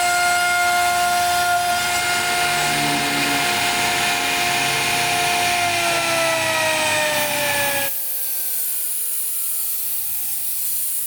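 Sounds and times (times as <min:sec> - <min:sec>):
router spindle whining down: 0:00.0 - 0:10.4
loud rushing noise: 0:01.0 - 0:07.8.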